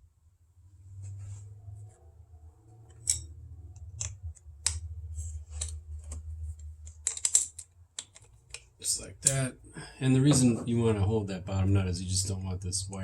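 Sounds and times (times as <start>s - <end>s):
metal wrench clicking on nut: 2.9s - 4.9s, 6.8s - 9.4s.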